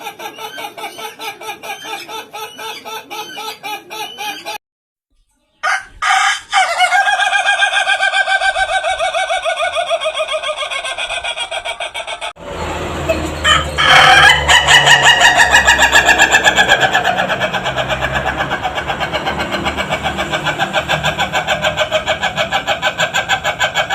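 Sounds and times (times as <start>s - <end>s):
rooster crowing: 5.6s - 9.4s, 13.3s - 19.0s.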